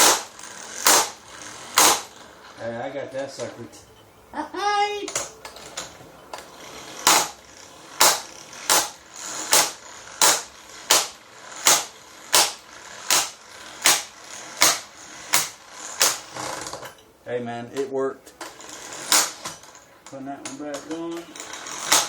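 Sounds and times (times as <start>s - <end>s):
impact wrench metallic knocks: 5.1s - 7.4s, 8.0s - 17.1s, 17.8s - 22.0s.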